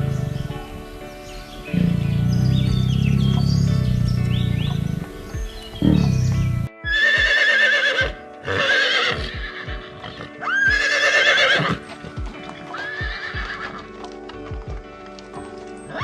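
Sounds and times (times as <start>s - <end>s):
low thumps: 0.0s - 6.7s
horse whinnying: 1.7s - 5.3s, 5.9s - 11.9s, 12.7s - 13.9s.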